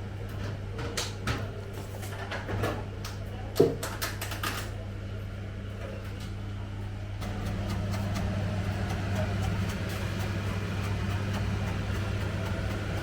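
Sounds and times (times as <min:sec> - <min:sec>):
steady low hum: 0:06.5 - 0:13.0.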